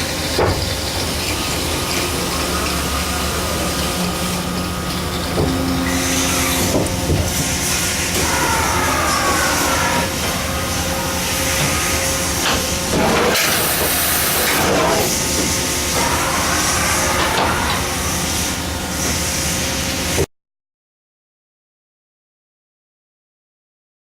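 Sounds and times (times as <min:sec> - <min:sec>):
machining center droning: 0:00.0 - 0:20.1
rising mechanical whine: 0:01.1 - 0:18.9.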